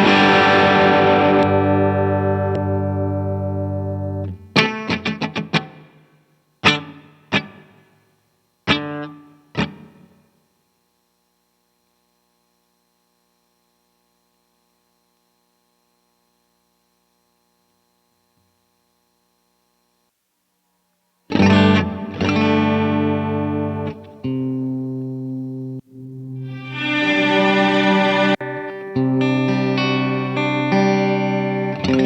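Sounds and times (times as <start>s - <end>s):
electric guitar chords ringing: 0.0s - 5.9s, 6.6s - 7.7s, 21.3s - 32.0s
distorted guitar chords: 0.0s - 7.8s, 8.6s - 10.2s, 21.3s - 32.0s.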